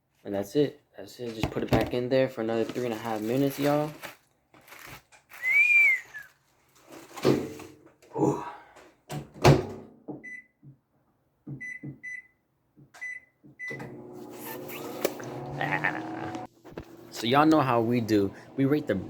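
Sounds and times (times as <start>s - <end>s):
keypad beeps: 11.6s - 12.3s, 13.0s - 13.8s
microwave oven humming: 13.6s - 19.0s.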